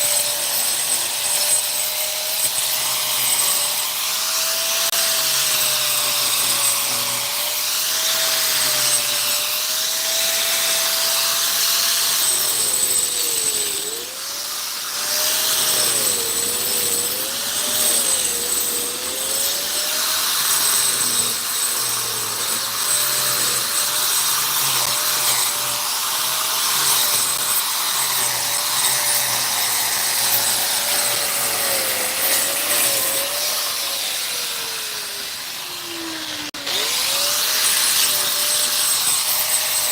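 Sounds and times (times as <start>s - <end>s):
power tool motor whining: 0.0s - 39.9s.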